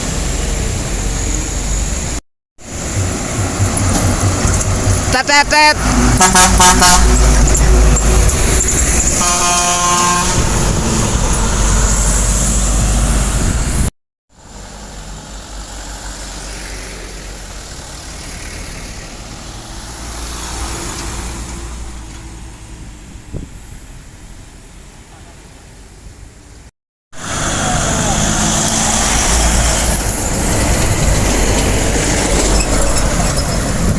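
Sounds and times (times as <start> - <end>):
truck engine passing: 0.0 - 23.2, 27.2 - 33.9
road traffic noise: 0.0 - 33.9
multi-tone air horn: 5.4 - 7.3, 9.2 - 12.0.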